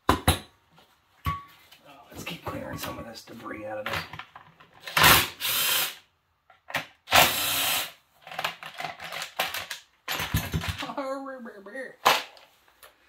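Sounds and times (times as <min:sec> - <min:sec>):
parts clicking and rattling: 0:03.8 - 0:05.2, 0:08.2 - 0:10.9.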